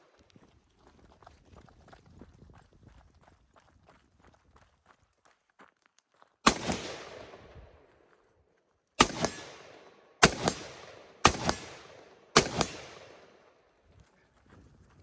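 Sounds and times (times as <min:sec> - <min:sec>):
rifle shots echoing: 0:06.4 - 0:07.9, 0:09.0 - 0:13.6.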